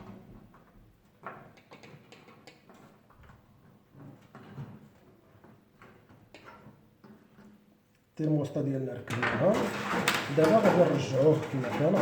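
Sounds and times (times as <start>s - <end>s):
small parts clicking and knocking: 1.2s - 3.4s.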